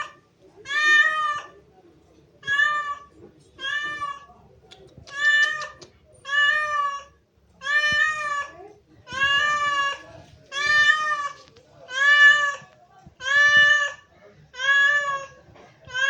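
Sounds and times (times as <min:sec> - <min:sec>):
cat meowing: 0:05.1 - 0:14.0, 0:14.6 - 0:16.0.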